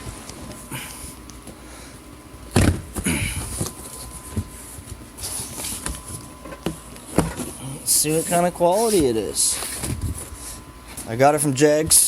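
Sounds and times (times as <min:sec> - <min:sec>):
cardboard box thud: 0:02.6 - 0:04.5
cardboard rustling and scraping: 0:02.6 - 0:11.1.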